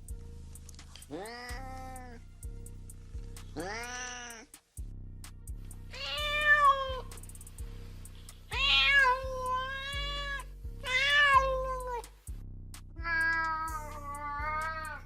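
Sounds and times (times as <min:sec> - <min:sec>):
background music with beat: 0:00.0 - 0:15.0
cat meowing: 0:01.1 - 0:02.2, 0:03.6 - 0:04.5, 0:05.9 - 0:07.1, 0:08.5 - 0:12.0, 0:13.0 - 0:15.0.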